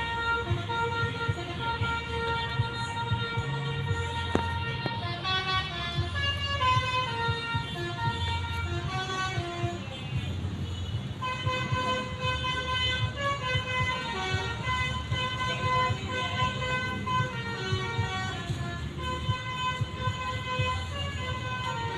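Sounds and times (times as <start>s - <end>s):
multi-tone air horn tune: 0.0s - 21.9s.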